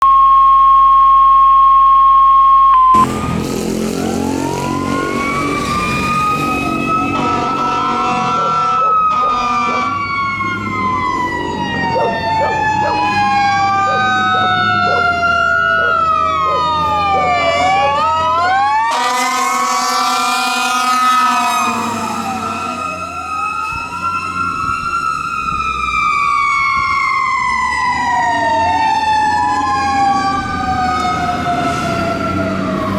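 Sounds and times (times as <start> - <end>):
electronic siren wailing: 2.7 - 32.9
loud rough horn blare: 3.0 - 24.0.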